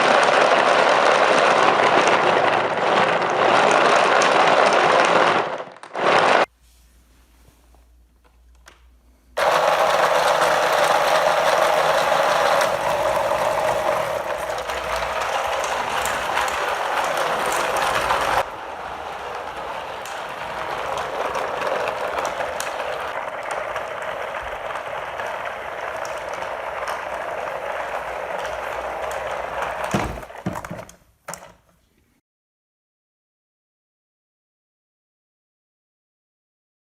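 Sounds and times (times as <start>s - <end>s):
mechanical clatter: 9.4s - 30.9s.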